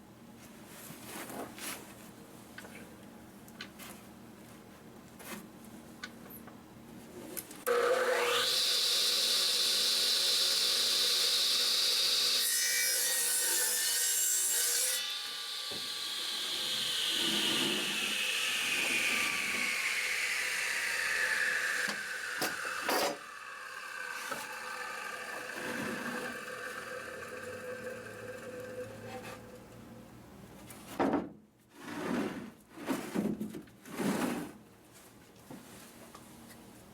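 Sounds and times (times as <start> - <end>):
saw cutting wood: 7.7 - 29.7
saw blade winding down: 16.0 - 29.6.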